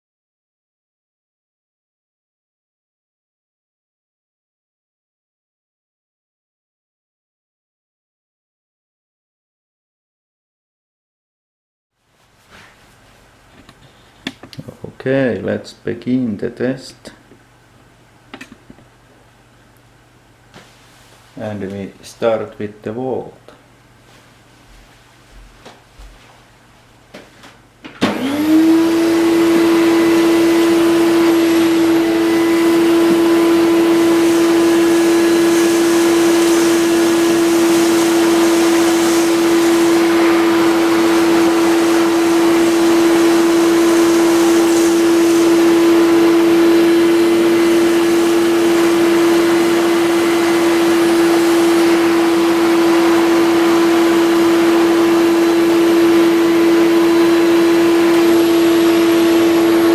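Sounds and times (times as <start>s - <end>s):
vacuum cleaner running: 27.1s - 59.9s.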